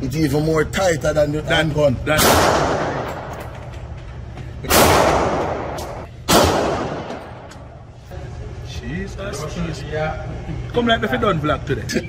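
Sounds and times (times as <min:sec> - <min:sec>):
gunshots with echo: 0:02.2 - 0:03.4, 0:04.7 - 0:07.5.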